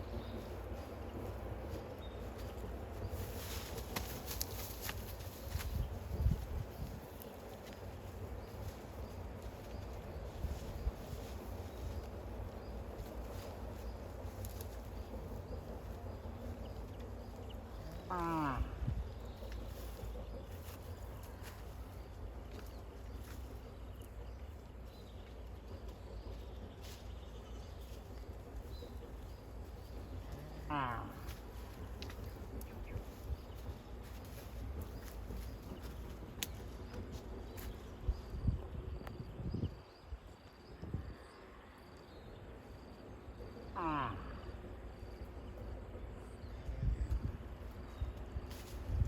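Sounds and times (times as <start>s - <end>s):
cows crunching soil: 0.1s - 23.8s, 29.6s - 37.8s
low rumble: 5.1s - 49.0s.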